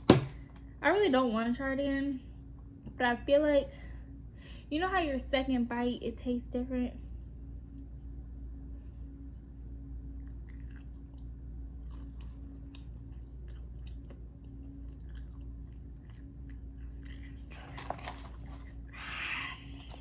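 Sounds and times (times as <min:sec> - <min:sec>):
steady low hum: 0:00.0 - 0:20.0
person chewing food: 0:09.4 - 0:19.0.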